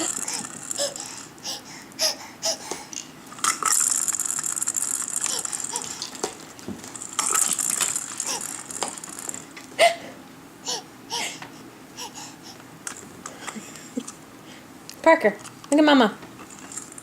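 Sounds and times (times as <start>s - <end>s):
baby vocalizing: 0.0s - 2.9s, 5.2s - 6.3s
toy rattling: 0.0s - 9.5s, 16.5s - 17.0s.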